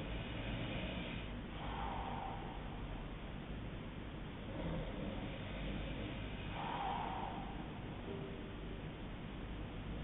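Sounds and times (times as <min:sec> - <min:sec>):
low steady hum: 0:00.0 - 0:10.0
person snoring: 0:04.5 - 0:07.7.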